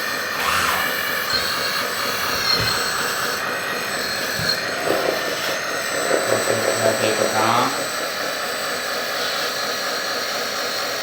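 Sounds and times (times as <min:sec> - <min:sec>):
toy bulldozer motor whine: 0:00.0 - 0:08.2.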